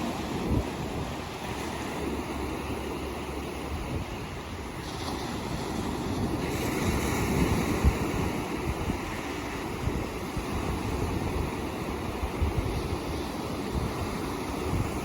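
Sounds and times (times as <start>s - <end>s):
ocean waves breaking: 0.0s - 15.0s.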